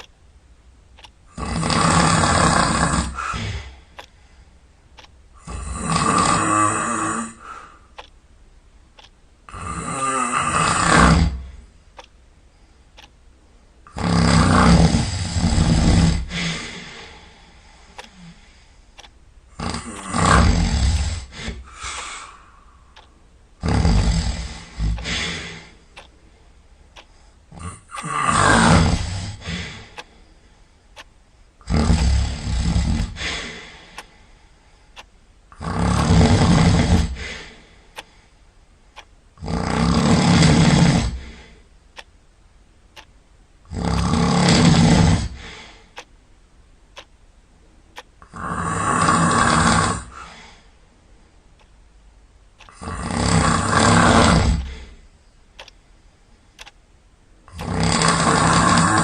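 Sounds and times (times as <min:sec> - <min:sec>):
quiet breathing: 0:00.0 - 0:59.0
loud snoring: 0:01.3 - 0:03.7, 0:05.4 - 0:07.5, 0:09.5 - 0:11.5, 0:13.9 - 0:17.0, 0:19.6 - 0:22.1, 0:23.6 - 0:25.7, 0:27.5 - 0:29.7, 0:31.6 - 0:33.6, 0:35.5 - 0:37.4, 0:39.4 - 0:41.4, 0:43.7 - 0:45.5, 0:48.2 - 0:50.3, 0:52.6 - 0:54.9, 0:57.5 - 0:59.0.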